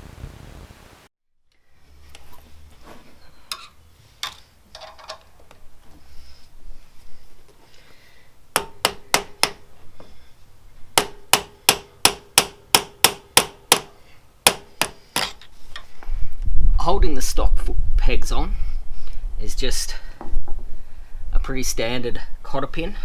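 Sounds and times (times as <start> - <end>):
hammer tapping on metal: 8.6 - 9.6, 11.0 - 15.3.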